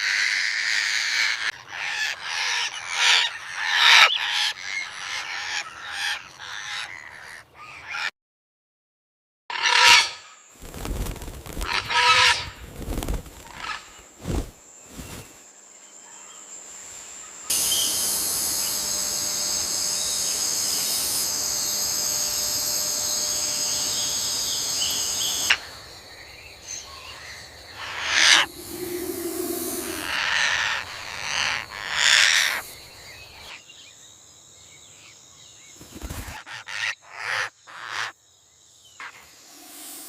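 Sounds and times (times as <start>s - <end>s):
sharp animal calls: 0.0s - 8.1s, 11.6s - 12.6s, 27.8s - 32.6s
high-pitched insect drone: 16.5s - 34.0s, 38.9s - 40.0s.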